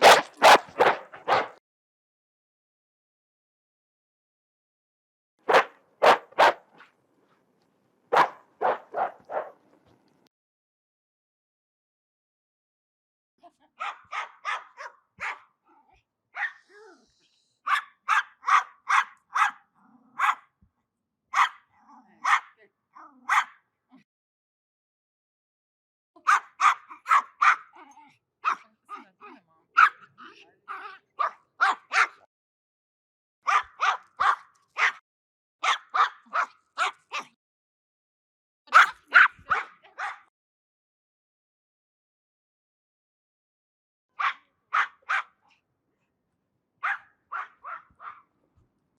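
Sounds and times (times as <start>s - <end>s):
dog barking angrily: 0.0s - 1.6s, 5.5s - 6.9s, 8.1s - 9.6s, 13.8s - 15.5s, 17.7s - 19.6s, 20.2s - 20.5s, 21.4s - 21.6s, 22.2s - 22.5s, 23.3s - 23.6s, 26.3s - 27.7s, 29.8s - 30.0s, 30.8s - 32.2s, 33.5s - 35.0s, 35.6s - 37.3s, 38.7s - 40.3s, 44.2s - 45.4s, 46.8s - 48.3s.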